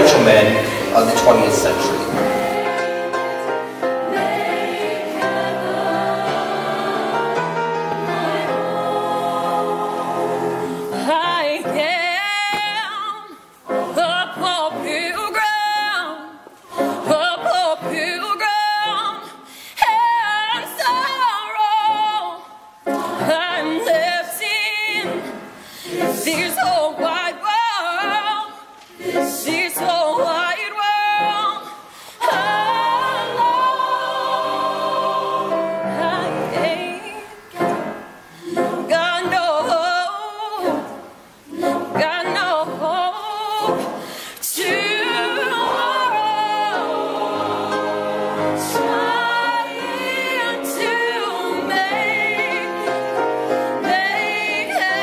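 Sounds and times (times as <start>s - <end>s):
single voice singing with vibrato: 0.0s - 3.4s, 19.8s - 55.0s
choir singing in harmony: 0.0s - 55.0s.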